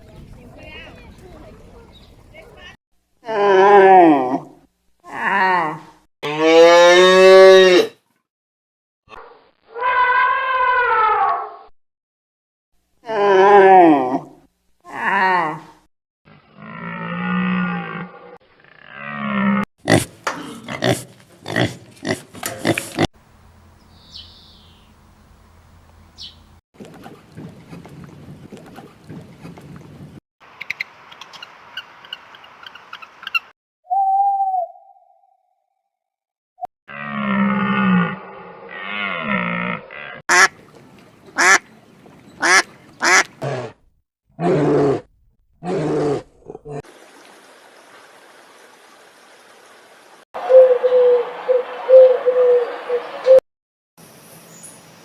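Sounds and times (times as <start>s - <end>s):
elephant calling: 50.4s - 53.4s.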